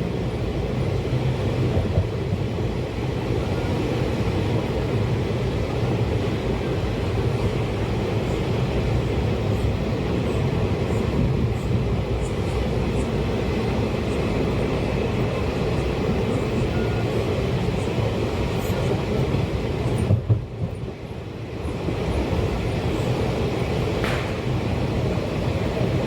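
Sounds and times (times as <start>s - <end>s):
train wheels rumbling on rails: 0.0s - 26.0s
sharp knocks: 24.0s - 24.5s.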